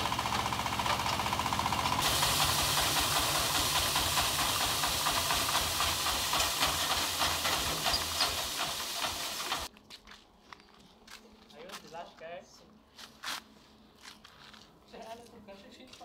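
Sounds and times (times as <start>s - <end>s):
wood crusher engine rumble: 0.0s - 9.7s
steady hiss: 2.0s - 9.7s.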